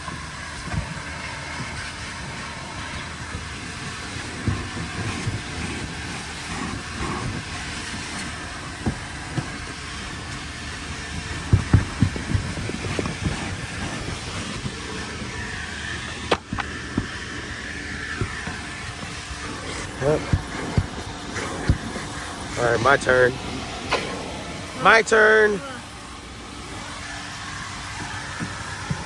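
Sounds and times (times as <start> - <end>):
vacuum hissing: 0.0 - 29.0
low thumps and knocks: 10.9 - 15.0, 16.3 - 22.3.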